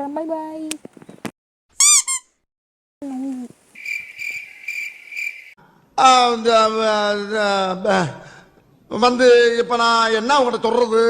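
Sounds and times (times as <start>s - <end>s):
long held voice: 3.0s - 3.5s
high cricket-like chirps: 3.7s - 5.6s.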